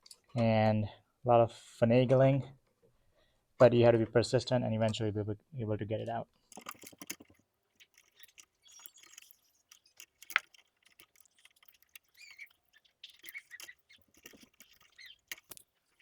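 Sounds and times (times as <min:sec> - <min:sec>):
short squeaks: 0:06.5 - 0:16.0.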